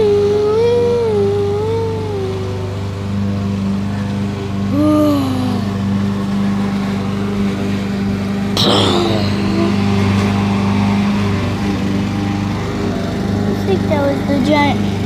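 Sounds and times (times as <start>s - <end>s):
low engine-like hum: 0.0s - 15.0s.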